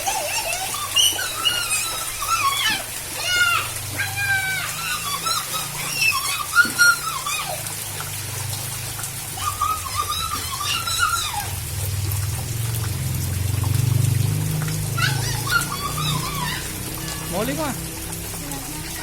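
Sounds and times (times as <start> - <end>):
high wavering cry: 0.0 - 11.8, 14.9 - 17.5
rain falling: 0.0 - 19.0.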